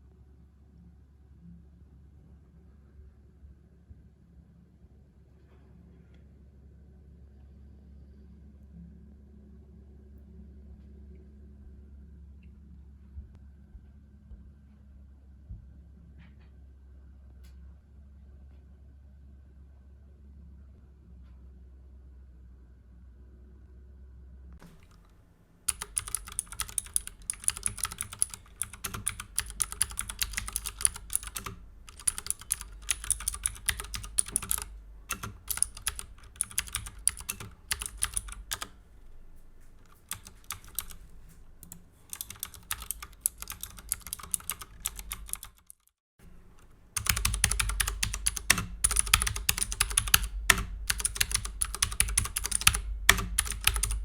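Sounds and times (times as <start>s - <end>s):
mechanical keyboard typing: 24.6s - 25.1s, 25.7s - 54.0s.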